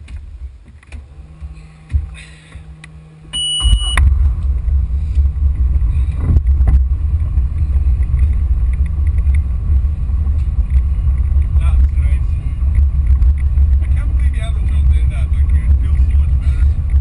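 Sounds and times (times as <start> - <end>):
boat motor rumbling: 0.0 - 17.0
high electronic beep: 3.3 - 4.0.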